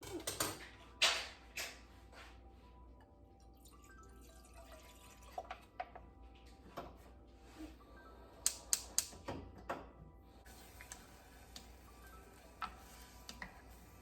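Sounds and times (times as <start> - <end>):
kitchenware clinking: 0.0 - 1.8.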